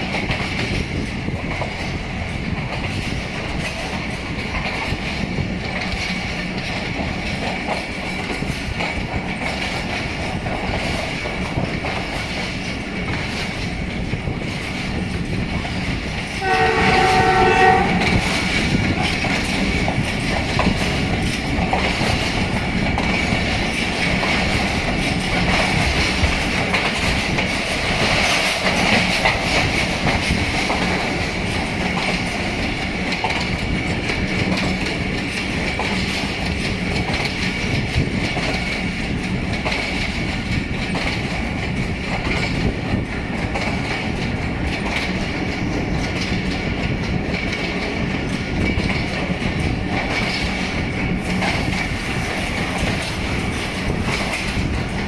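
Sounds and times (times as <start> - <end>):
train wheels clickety-clack: 0.0 - 55.0
locomotive horn blast: 16.4 - 18.5.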